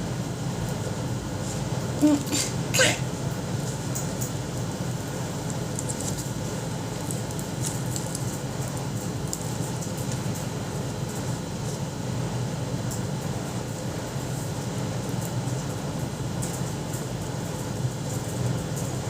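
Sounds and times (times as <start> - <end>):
low fan hum: 0.0 - 19.0
soft ticks and rustles of handling: 5.4 - 11.9.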